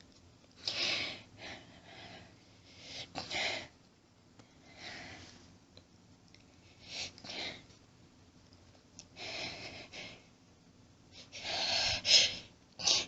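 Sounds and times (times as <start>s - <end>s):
person's hissing shaky breaths: 0.6s - 3.8s, 4.5s - 5.5s, 6.6s - 7.7s, 9.1s - 10.4s, 11.1s - 13.0s.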